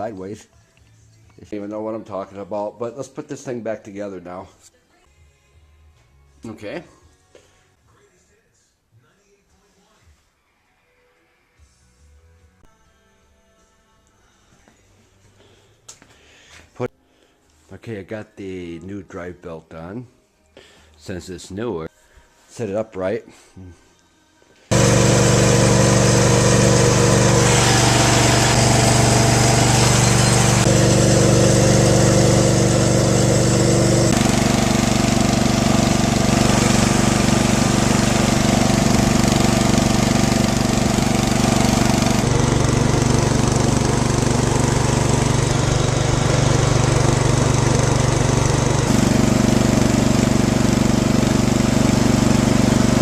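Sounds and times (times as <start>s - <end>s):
riding lawn mower engine: 24.7s - 53.0s.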